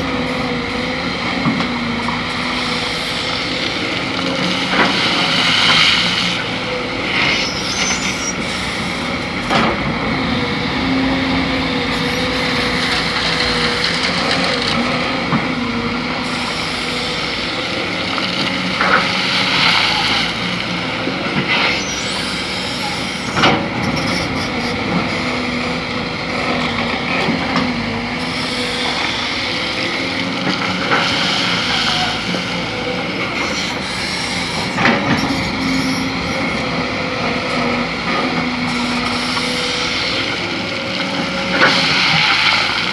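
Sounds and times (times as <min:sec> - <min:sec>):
excavator diesel engine running: 0:00.0 - 0:42.9.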